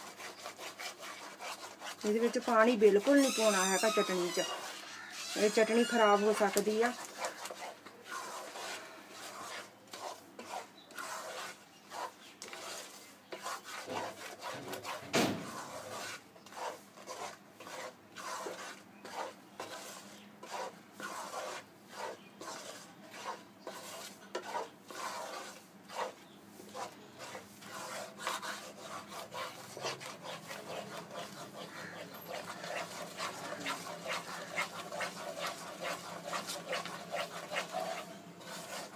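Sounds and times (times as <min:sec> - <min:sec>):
utensil scraping a cooking pan: 0:00.0 - 0:38.9.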